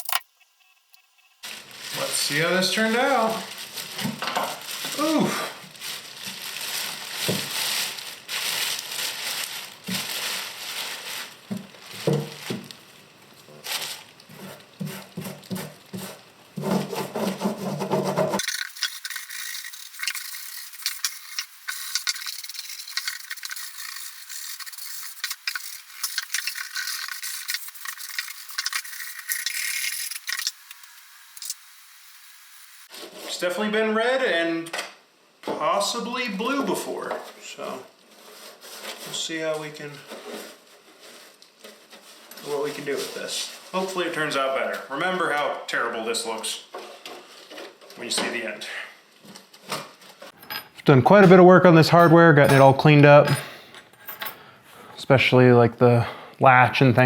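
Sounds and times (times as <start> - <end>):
scraper scraping paint off metal: 14.3 - 31.6.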